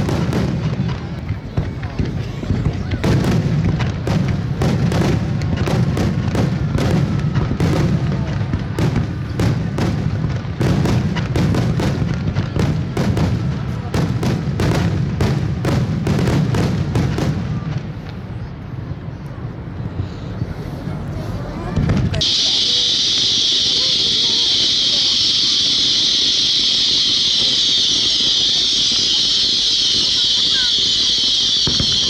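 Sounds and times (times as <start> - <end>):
fireworks shells bursting: 0.0 - 7.6, 21.8 - 32.0
continuous low rumble: 17.5 - 22.2.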